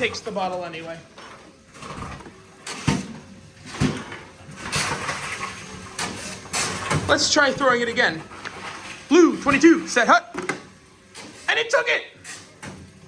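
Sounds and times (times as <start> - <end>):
vending machine knocks and clunks: 9.4 - 11.4.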